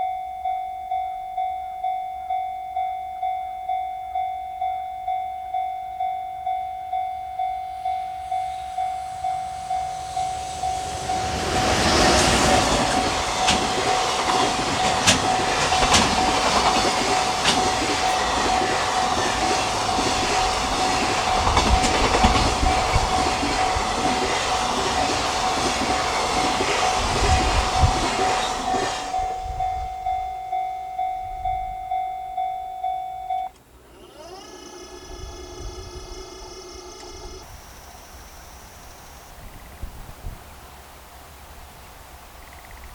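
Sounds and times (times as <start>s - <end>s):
level crossing alarm dinging: 0.0s - 38.8s
freight train wheels clattering: 7.4s - 31.6s.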